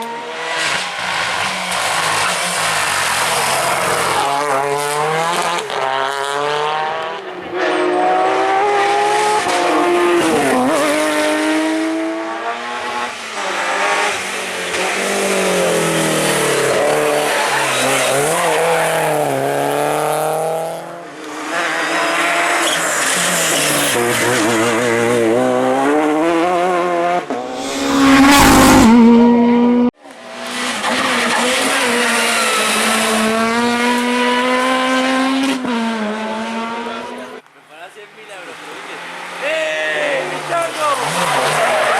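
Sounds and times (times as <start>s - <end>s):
rally car engines revving: 0.0s - 37.4s, 38.5s - 41.9s
tyre squeal: 22.6s - 24.6s.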